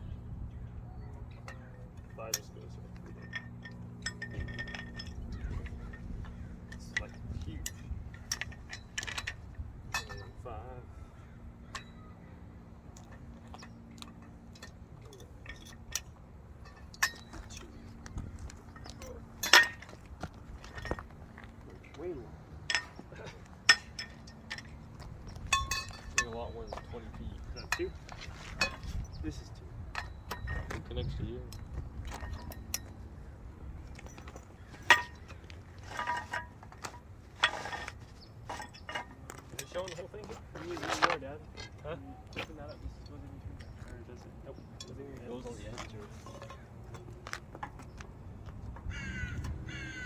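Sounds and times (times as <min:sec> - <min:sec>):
steel tubes clinking together: 0:01.4 - 0:10.8, 0:12.8 - 0:49.6.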